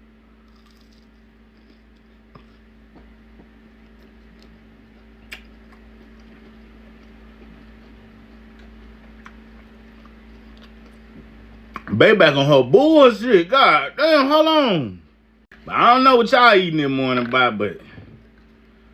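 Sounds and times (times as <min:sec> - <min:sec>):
man chewing: 0:00.1 - 0:11.9, 0:18.1 - 0:18.9.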